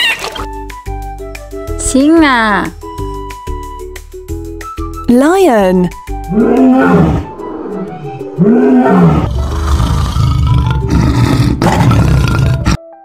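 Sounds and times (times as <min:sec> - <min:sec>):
lion growling: 0:06.2 - 0:07.4, 0:08.1 - 0:12.8
lion roaring: 0:06.2 - 0:12.8.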